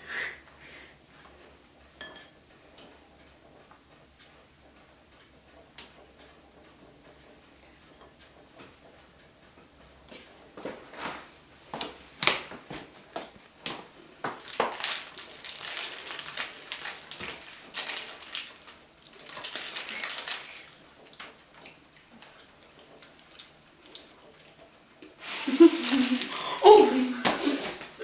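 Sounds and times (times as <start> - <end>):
plastic packaging crinkling: 14.4 - 20.8, 25.5 - 27.5.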